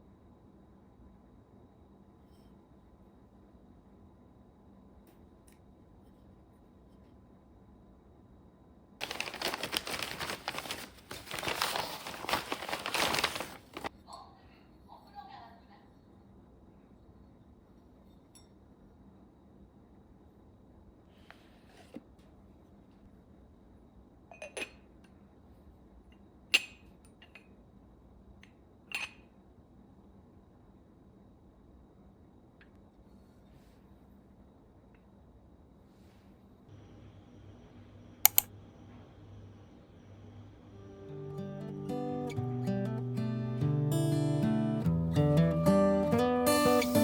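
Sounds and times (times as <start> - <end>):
packaging crinkling and rustling: 9.0 - 13.9
dishes clinking: 24.3 - 24.9, 28.9 - 29.3.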